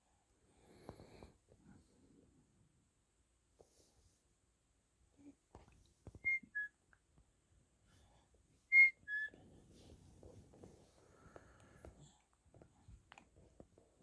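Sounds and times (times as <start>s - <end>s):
two-note whistle: 6.2s - 6.7s, 8.7s - 9.3s.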